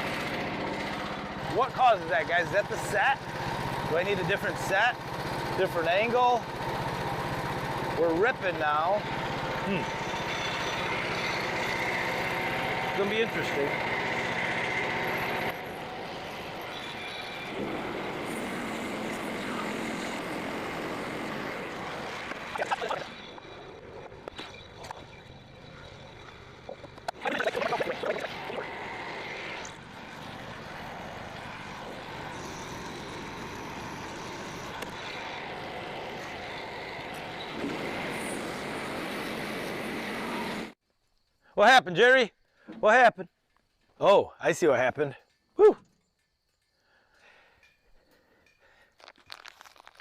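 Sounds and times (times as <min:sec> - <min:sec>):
sawmill engine running: 0:00.0 - 0:40.8.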